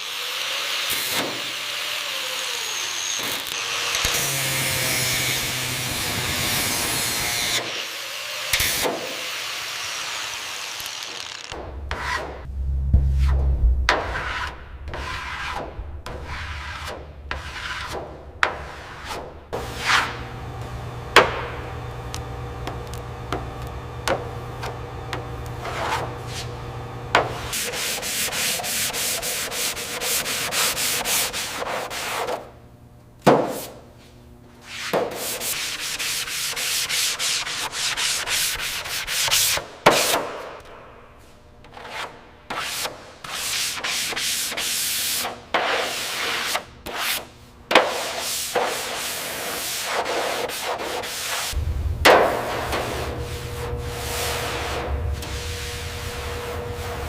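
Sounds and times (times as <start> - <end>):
steady hum: 11.6 - 31.6, 51.3 - 57.0
rough abrasive rubbing: 49.8 - 57.0.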